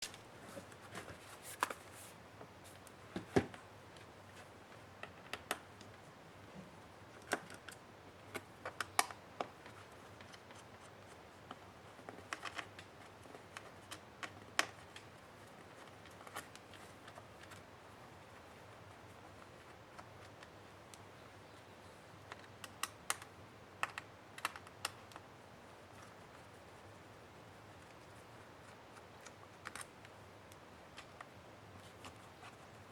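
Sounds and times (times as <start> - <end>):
laptop being handled clicks: 22.3 - 25.2.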